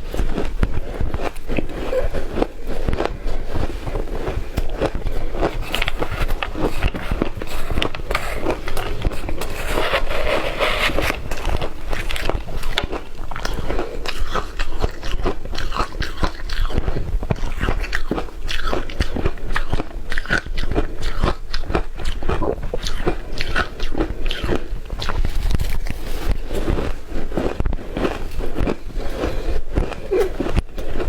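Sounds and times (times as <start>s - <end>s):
crunching and chewing ice: 0.0s - 31.0s.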